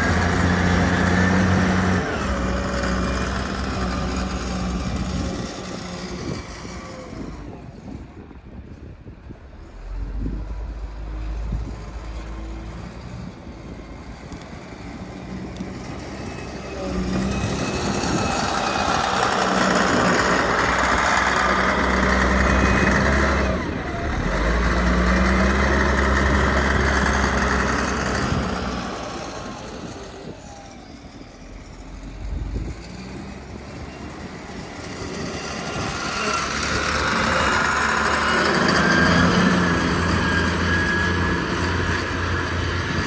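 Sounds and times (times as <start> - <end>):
engine running: 0.0 - 43.0.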